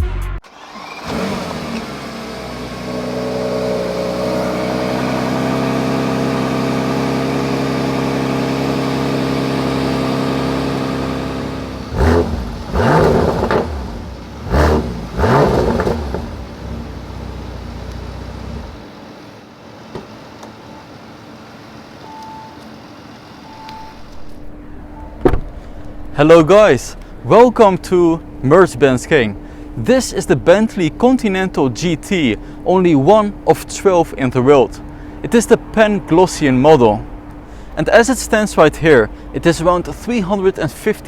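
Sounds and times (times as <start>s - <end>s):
car engine idling and revving: 0.5s - 41.0s.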